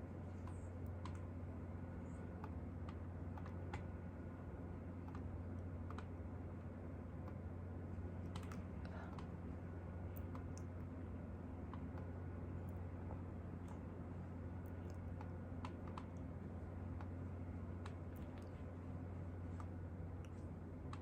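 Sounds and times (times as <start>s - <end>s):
steady low hum: 0.0s - 21.0s
faint small clicks: 0.3s - 1.3s, 2.1s - 3.9s, 5.0s - 6.2s, 8.2s - 9.3s, 10.1s - 10.8s, 14.6s - 16.3s, 17.8s - 18.8s, 19.5s - 21.0s.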